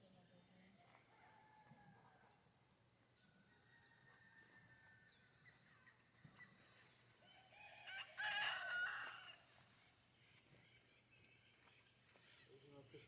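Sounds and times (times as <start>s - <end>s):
rooster crowing: 7.6s - 9.4s.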